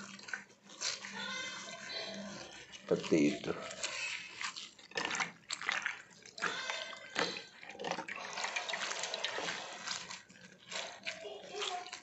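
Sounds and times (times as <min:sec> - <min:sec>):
hands splashing in water: 0:03.7 - 0:12.0.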